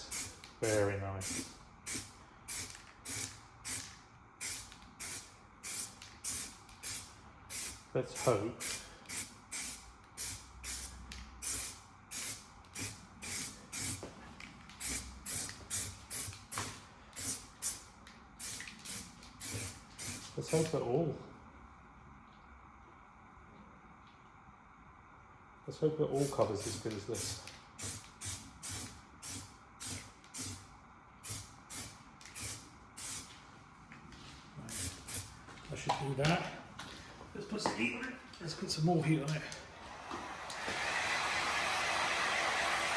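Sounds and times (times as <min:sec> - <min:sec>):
spray can hissing: 0:00.1 - 0:14.0, 0:14.8 - 0:17.8, 0:18.4 - 0:20.3, 0:26.2 - 0:30.6, 0:31.2 - 0:33.3, 0:34.7 - 0:35.3.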